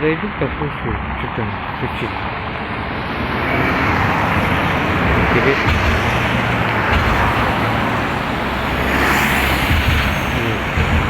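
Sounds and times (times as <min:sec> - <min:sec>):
road traffic: 0:00.0 - 0:11.0
bridge knocking and rattling: 0:04.0 - 0:11.0.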